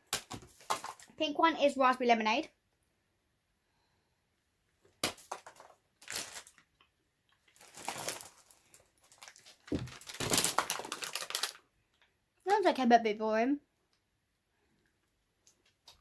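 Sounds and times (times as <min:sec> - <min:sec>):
plastic packet crinkling: 0:05.2 - 0:12.1.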